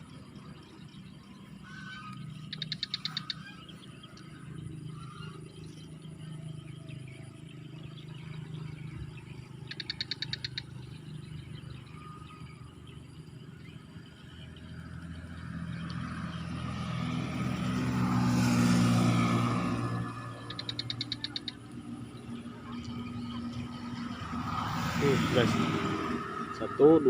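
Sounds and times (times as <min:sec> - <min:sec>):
animal trills of rapid pulses: 0:01.6 - 0:05.6, 0:09.4 - 0:11.2, 0:19.2 - 0:24.2.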